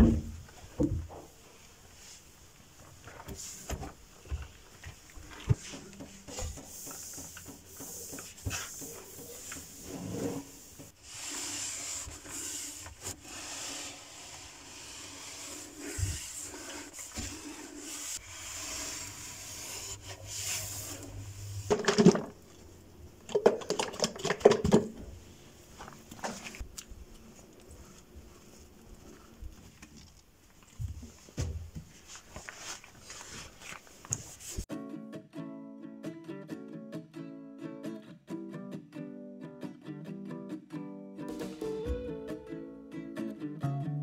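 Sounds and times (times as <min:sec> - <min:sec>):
rubbing and scraping: 0:05.2 - 0:22.5.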